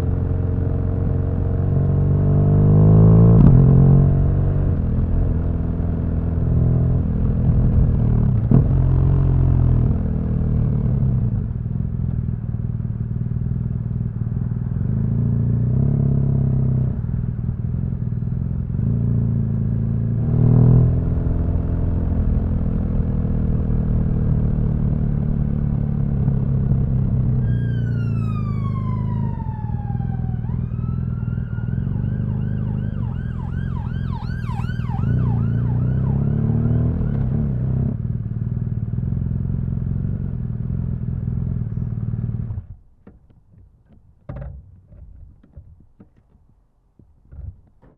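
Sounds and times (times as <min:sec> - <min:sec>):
emergency vehicle siren: 0:27.4 - 0:37.8.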